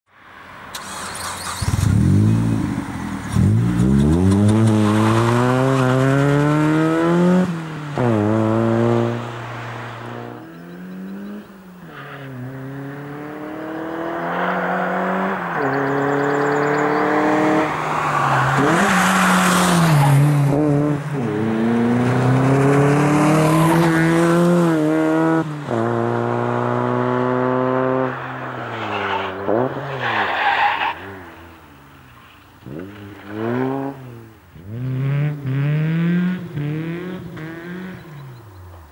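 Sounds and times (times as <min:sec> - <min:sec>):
car engine accelerating through gears: 0:00.7 - 0:09.4, 0:10.1 - 0:29.8, 0:32.6 - 0:38.6.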